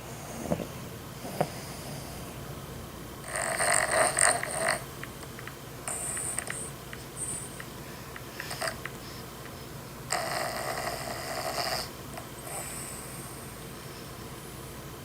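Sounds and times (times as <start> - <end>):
dog snoring: 0.0 - 2.3, 3.2 - 4.9, 5.8 - 7.6, 8.4 - 9.2, 10.1 - 14.1.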